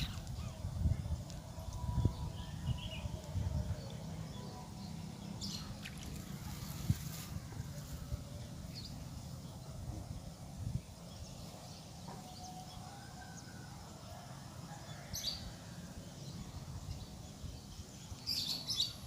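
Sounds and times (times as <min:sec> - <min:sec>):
steady low rumble: 0:00.0 - 0:11.7.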